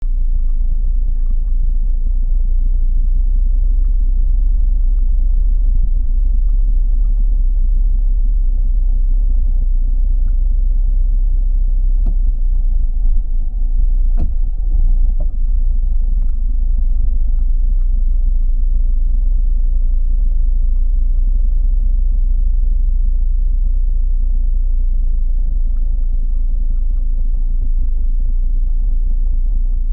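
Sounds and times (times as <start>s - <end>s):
car engine idling: 0.0s - 29.9s.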